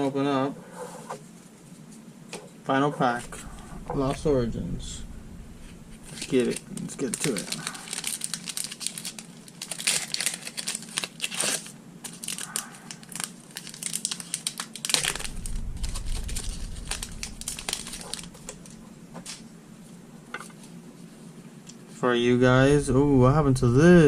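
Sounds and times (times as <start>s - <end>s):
low rumble: 3.0s - 8.3s, 14.9s - 20.3s, 22.4s - 24.0s
foil wrapper crinkling and tearing: 6.1s - 19.4s.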